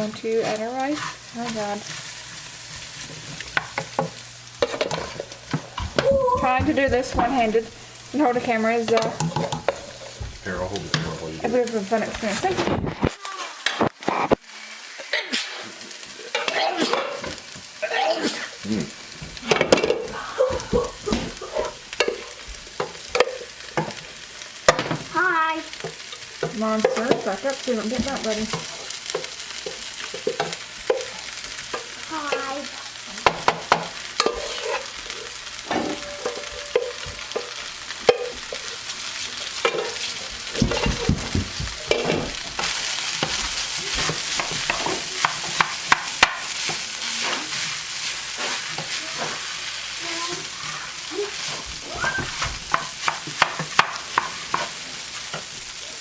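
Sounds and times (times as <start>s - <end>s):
rice sizzling in a pan: 0.0s - 56.0s
utensil scraping a pan: 0.2s - 10.2s, 33.3s - 55.5s.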